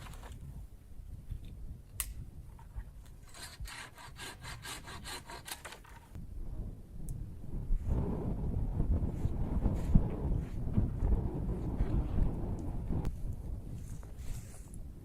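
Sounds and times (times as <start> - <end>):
even rasping strokes: 3.2 - 6.2.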